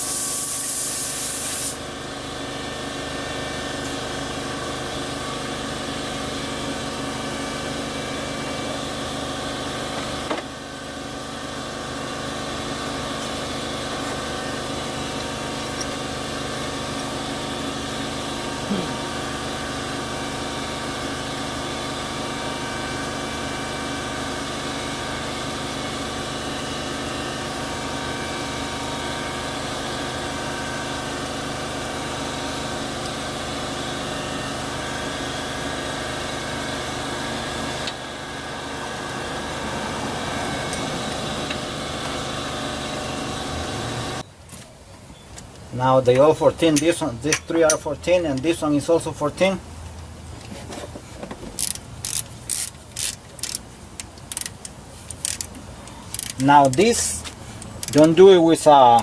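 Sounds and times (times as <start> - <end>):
steady motor hum: 0.0 - 59.0.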